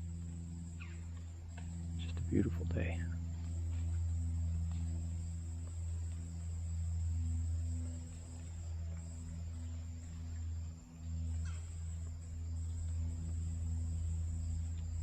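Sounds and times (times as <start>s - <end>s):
faint insect noise: 0.0s - 15.0s
low hum: 0.0s - 15.0s
faint ticks: 3.1s - 15.0s.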